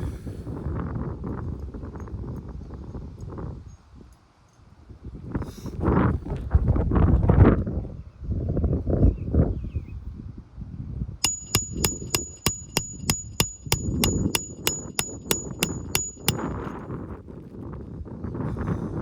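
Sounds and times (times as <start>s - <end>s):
hammer blows with metallic ring: 11.2s - 16.7s.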